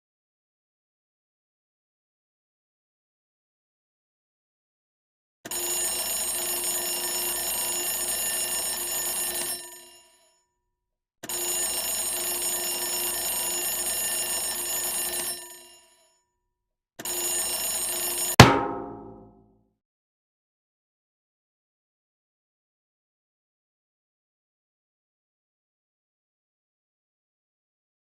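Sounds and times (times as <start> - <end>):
alarm clock bell ringing: 5.7 - 10.2, 11.4 - 16.0, 17.1 - 18.3
sharp loud bang: 18.4 - 19.4.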